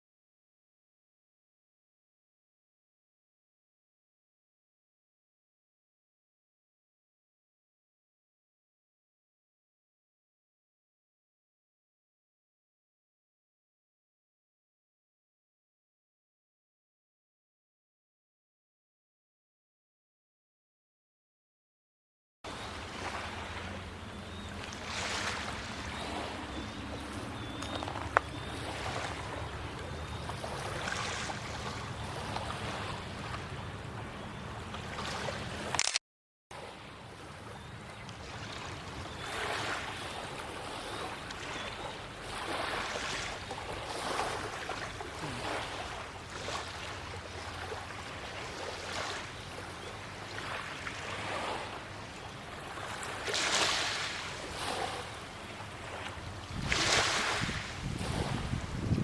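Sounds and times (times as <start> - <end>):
small waves washing ashore: 22.5 - 35.8, 36.6 - 59.0
wind on microphone: 56.3 - 59.0.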